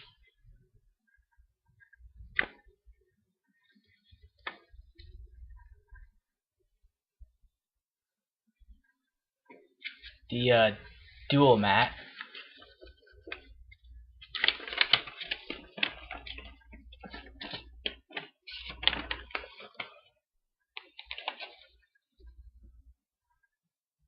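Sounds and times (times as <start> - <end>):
paper crinkling: 12.0 - 20.2, 20.8 - 22.3.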